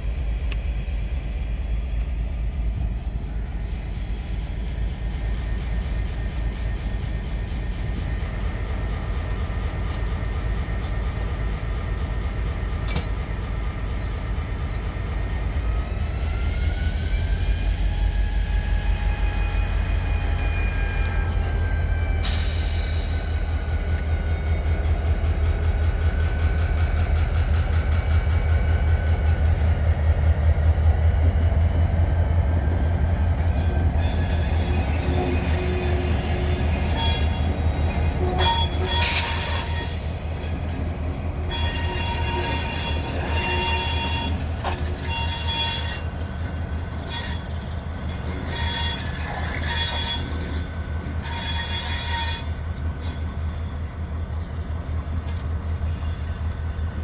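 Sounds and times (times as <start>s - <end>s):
freight train rumbling: 0.0s - 57.0s
wheel squeal: 41.5s - 46.1s, 46.9s - 52.5s.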